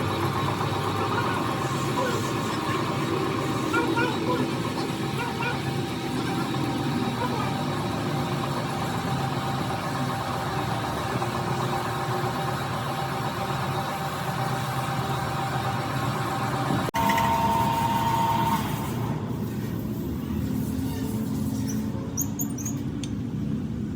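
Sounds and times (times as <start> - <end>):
machine high whine: 0.0 - 22.8
machine droning hum: 0.0 - 23.9.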